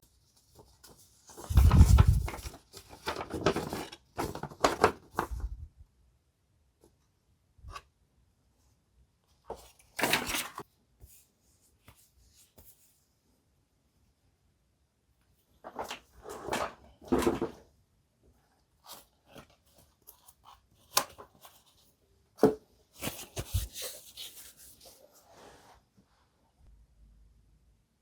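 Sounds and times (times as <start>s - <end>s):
knocks and rustles of packaging: 1.4s - 5.4s, 15.7s - 17.7s, 22.4s - 24.2s
scrape or rustle: 23.0s - 26.4s.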